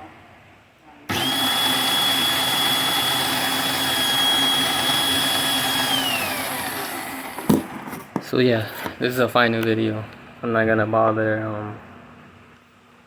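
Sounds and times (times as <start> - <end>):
electric scooter motor whining: 1.1 - 7.4.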